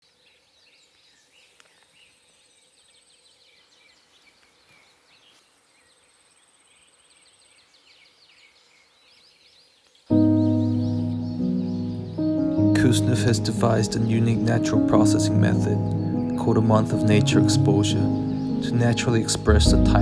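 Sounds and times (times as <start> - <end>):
small birds chirping: 0.0 - 20.0
loud music: 15.6 - 20.0.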